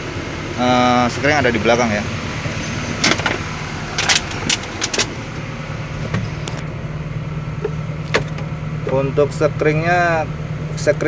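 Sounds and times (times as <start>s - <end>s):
excavator diesel engine idling: 0.0s - 11.0s
sharp clicks and knocks: 2.9s - 3.4s, 4.0s - 5.4s.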